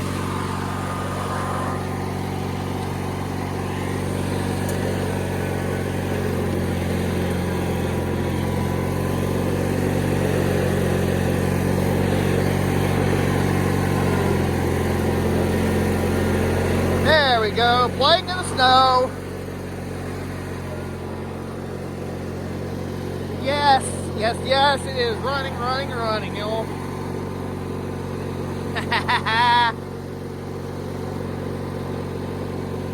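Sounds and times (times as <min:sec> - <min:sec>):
riding lawn mower engine running: 0:00.0 - 0:32.9.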